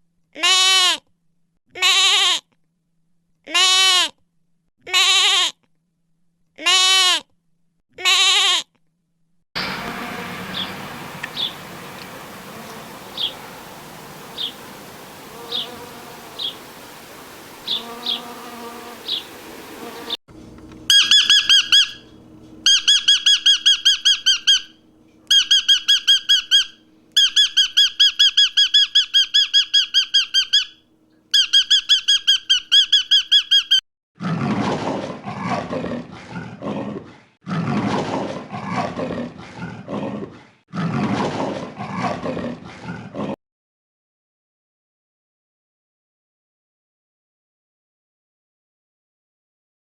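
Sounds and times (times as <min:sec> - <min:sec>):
rapidly pulsing high-pitched call: 0:09.6 - 0:20.2, 0:20.9 - 0:30.7
big cat roaring: 0:34.2 - 0:43.4.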